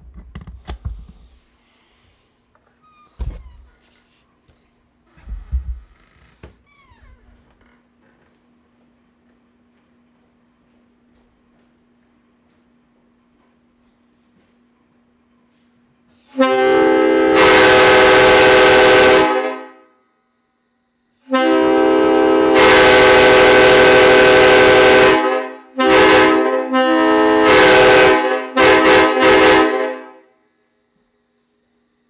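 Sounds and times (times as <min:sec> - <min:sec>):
train horn blasts: 0:16.3 - 0:20.0, 0:21.2 - 0:30.4.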